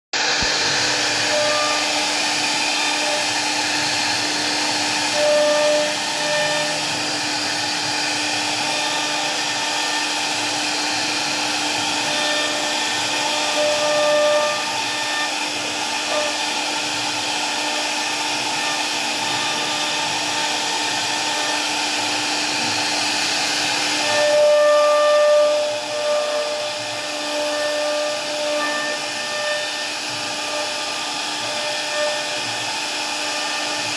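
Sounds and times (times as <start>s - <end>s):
cnc router spindle cutting wood: 0.1s - 33.9s.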